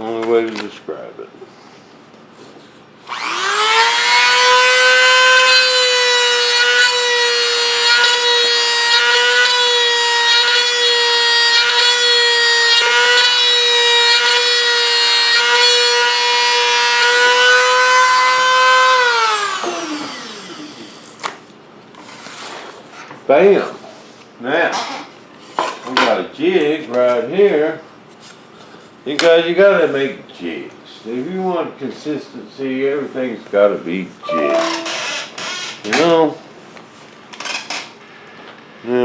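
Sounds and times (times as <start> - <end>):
rotary tool whining: 3.1 - 11.9, 19.0 - 21.0.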